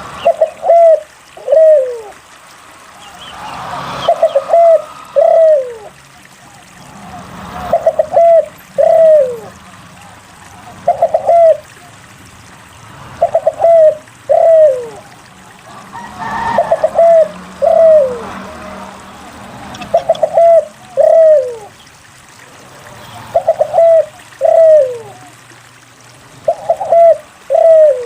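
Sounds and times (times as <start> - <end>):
dove cooing: 0.2 - 2.2, 4.0 - 6.7, 7.7 - 12.0, 13.2 - 18.8, 19.7 - 25.4, 26.4 - 28.0.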